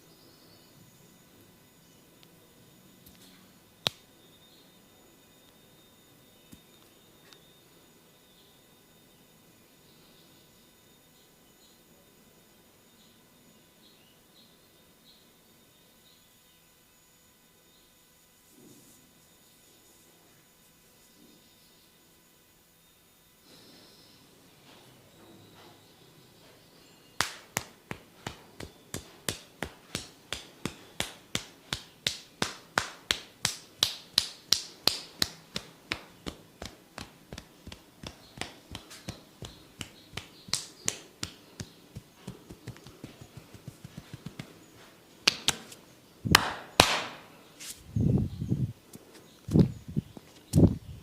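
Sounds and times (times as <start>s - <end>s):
sharp massage taps: 27.2s - 44.6s, 45.2s - 47.3s.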